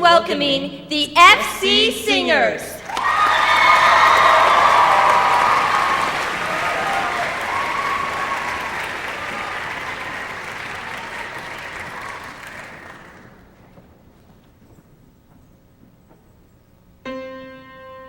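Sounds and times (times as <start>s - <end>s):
audience cheering: 2.8s - 13.4s
audience applauding: 2.8s - 13.7s.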